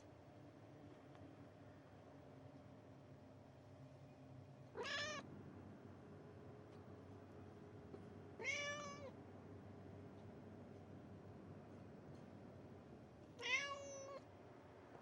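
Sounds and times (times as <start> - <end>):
cat meowing: 4.8 - 5.2, 8.4 - 9.1, 13.4 - 14.2.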